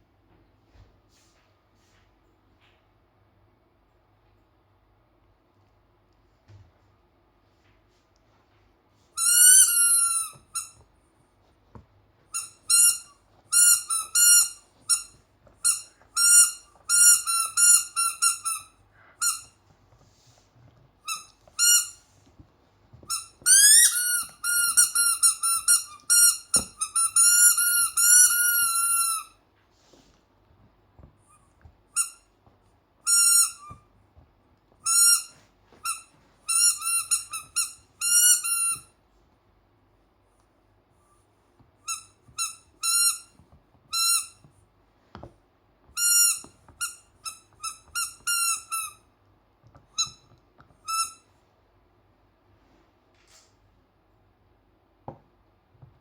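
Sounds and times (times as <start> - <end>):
squeaky toy squeaking: 9.2 - 10.8, 12.3 - 19.5, 21.1 - 22.0, 23.1 - 29.4, 32.0 - 32.2, 33.0 - 33.8, 34.8 - 38.9, 41.8 - 44.4, 46.0 - 49.0, 49.9 - 51.3.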